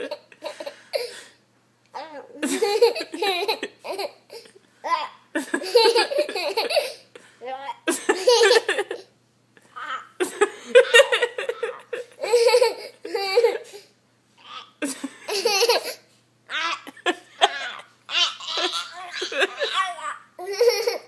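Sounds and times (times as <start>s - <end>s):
toddler laughing: 9.7s - 13.8s, 14.4s - 21.0s
people laughing: 10.2s - 12.2s.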